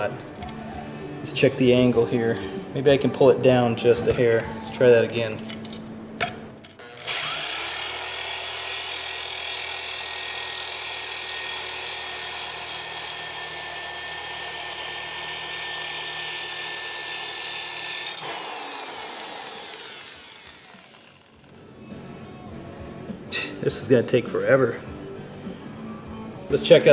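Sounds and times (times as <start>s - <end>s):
power tool motor whine: 6.8s - 21.7s.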